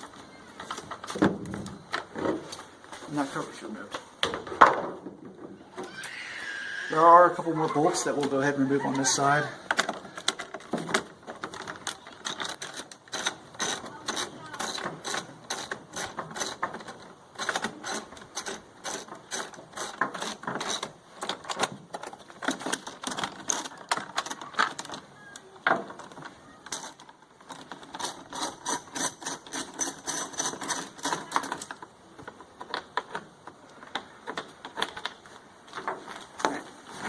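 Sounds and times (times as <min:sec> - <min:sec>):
hand tools clicking and rattling: 0:07.4 - 0:37.0.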